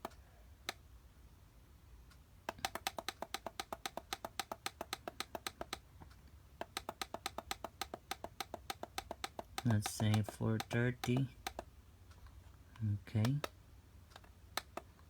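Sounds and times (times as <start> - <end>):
rapid button clicking: 6.6 - 11.7, 13.1 - 13.5.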